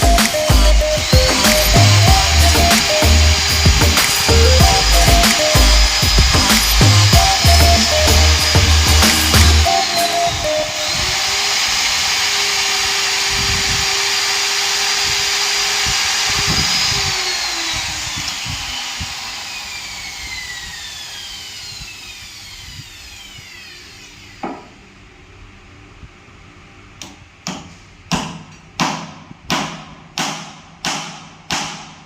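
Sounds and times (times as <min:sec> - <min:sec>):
power tool spinning down: 0:00.0 - 0:24.7.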